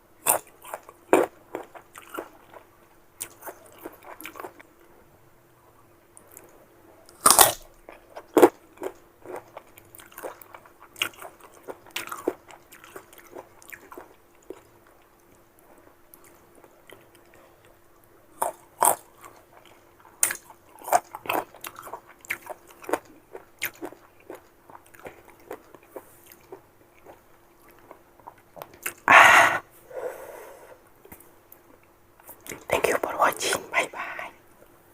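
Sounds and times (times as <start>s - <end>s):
faint steady hum: 0.0s - 34.9s
crunching and chewing mango: 0.2s - 5.0s, 6.2s - 29.1s.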